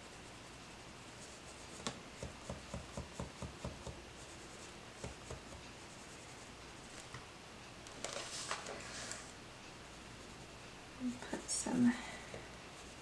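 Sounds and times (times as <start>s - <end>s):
pencil scratching on paper: 0.0s - 7.0s, 11.1s - 13.0s.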